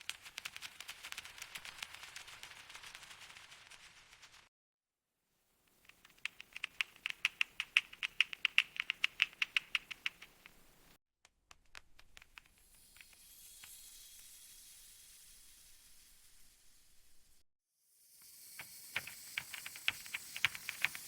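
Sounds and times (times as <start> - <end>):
faint steady hiss: 5.8 - 11.0, 18.2 - 21.0
mechanical keyboard keys clicking: 6.2 - 10.6.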